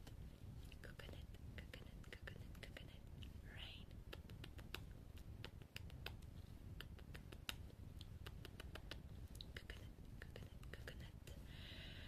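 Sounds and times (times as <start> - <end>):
wet mouth clicks: 1.6 - 11.1.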